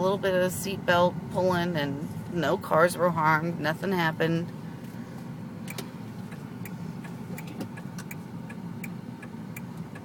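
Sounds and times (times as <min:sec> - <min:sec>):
car engine hum: 0:00.0 - 0:10.0
road noise inside car: 0:00.0 - 0:10.0
turn signal clicking: 0:05.6 - 0:10.0.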